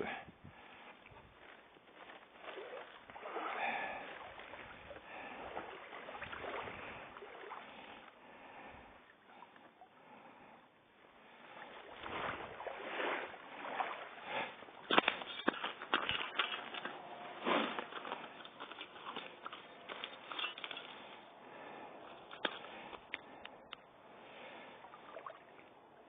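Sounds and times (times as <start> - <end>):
water lapping and sloshing: 0.0 - 26.0.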